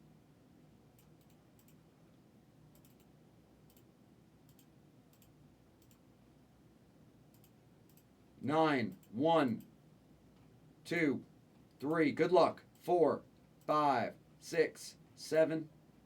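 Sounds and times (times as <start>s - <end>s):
faint irregular clicks: 0.9s - 6.1s, 7.3s - 8.2s, 8.9s - 10.6s, 12.6s - 13.8s.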